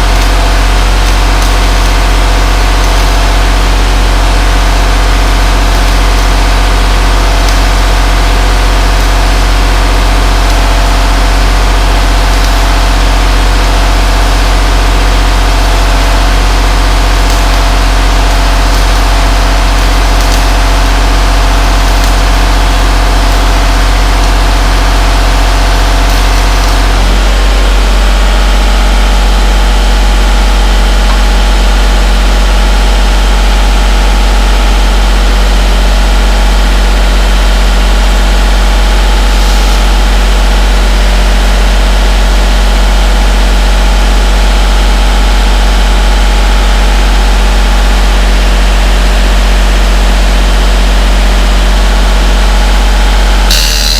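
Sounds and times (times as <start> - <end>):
engine drone with low hum: 0.0 - 53.9.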